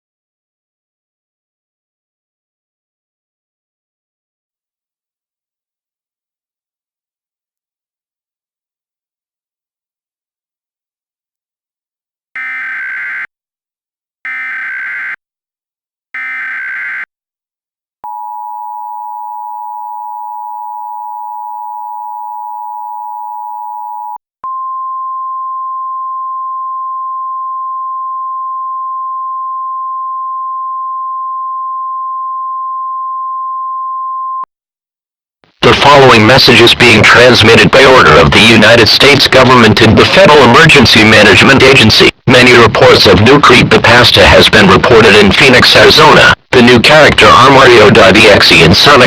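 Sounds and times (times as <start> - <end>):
screeching data bursts: 16.2 - 17.1.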